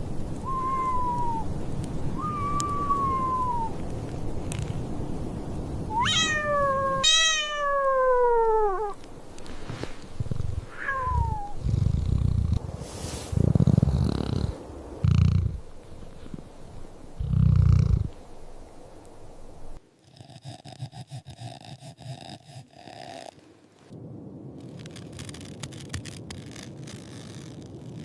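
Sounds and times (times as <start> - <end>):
wind-like rushing: 0.0 - 19.8, 23.9 - 28.0
cats meowing: 5.9 - 9.0, 10.7 - 11.6
cat purring: 10.2 - 12.6, 13.4 - 16.4, 17.2 - 18.2.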